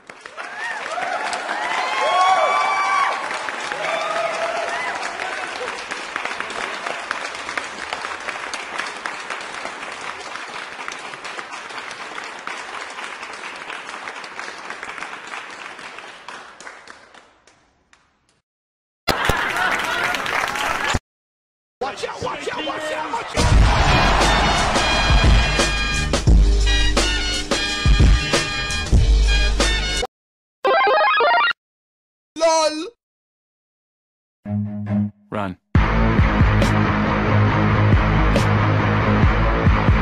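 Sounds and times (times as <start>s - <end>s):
crowd applause: 0.0s - 17.4s, 19.1s - 21.0s, 23.0s - 26.1s
heavy bass: 23.4s - 26.9s, 35.8s - 40.0s.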